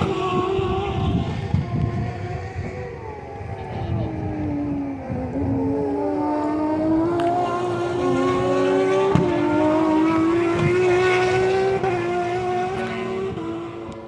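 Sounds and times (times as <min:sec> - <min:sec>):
race car engines at high revs: 0:00.0 - 0:14.0.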